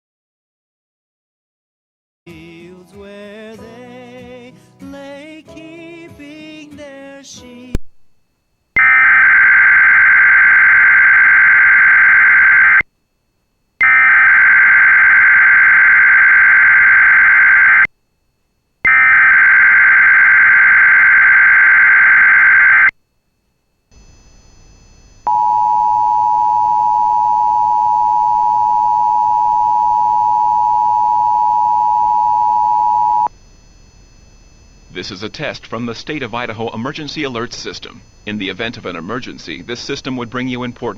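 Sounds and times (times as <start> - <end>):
music with singing: 2.3 - 7.8.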